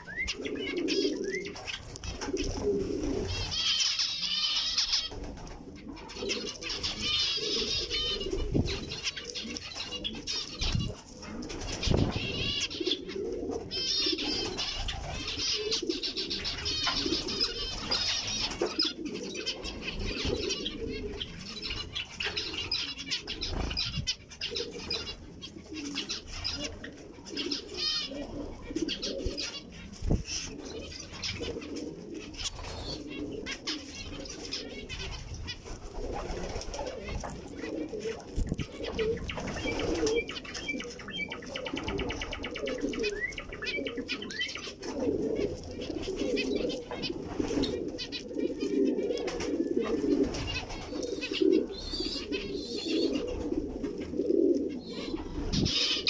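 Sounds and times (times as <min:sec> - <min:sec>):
mellow cooing: 0:05.6 - 0:56.0
finches chirping: 0:38.4 - 0:44.8.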